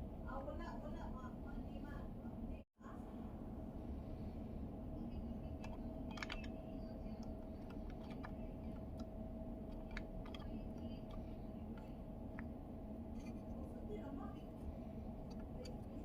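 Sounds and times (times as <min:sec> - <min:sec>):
steady background hum: 0:00.0 - 0:16.0
plastic parts clicking and tapping: 0:05.6 - 0:06.6, 0:07.2 - 0:09.1, 0:09.7 - 0:12.5.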